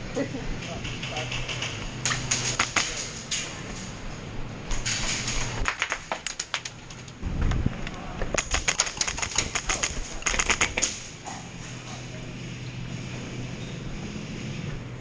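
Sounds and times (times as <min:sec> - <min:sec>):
airsoft guns firing: 0:00.8 - 0:03.3, 0:08.3 - 0:11.1.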